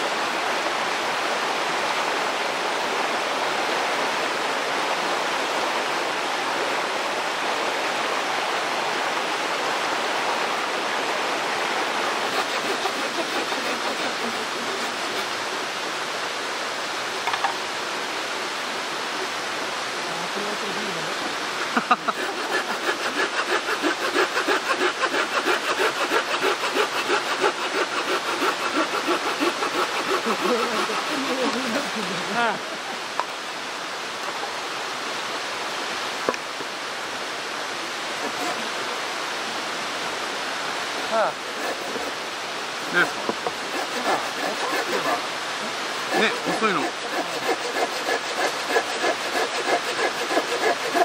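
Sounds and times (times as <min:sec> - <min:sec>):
mountain stream rushing: 0:00.0 - 0:51.0
rhythmic scraping: 0:12.2 - 0:15.3, 0:22.0 - 0:31.8, 0:41.5 - 0:42.2, 0:42.9 - 0:45.2, 0:46.0 - 0:51.0.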